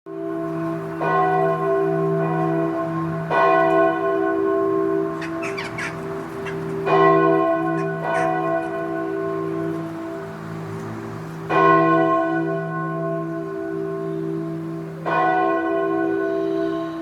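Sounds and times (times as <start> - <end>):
church bell tolling: 0.1 - 17.0
bird chirps: 5.2 - 6.8.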